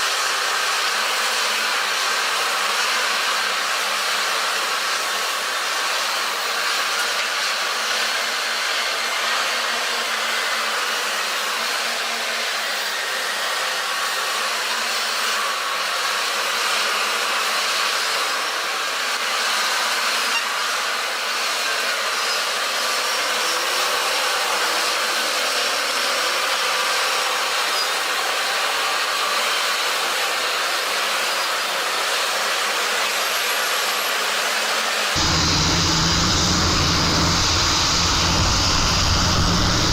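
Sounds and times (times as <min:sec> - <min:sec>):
machine whirring with hiss: 0:35.2 - 0:39.9.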